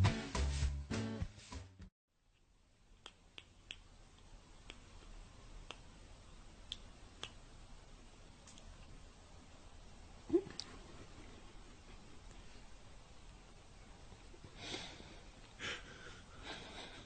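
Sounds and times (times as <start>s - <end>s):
soft sharp clicks: 8.4s - 8.7s.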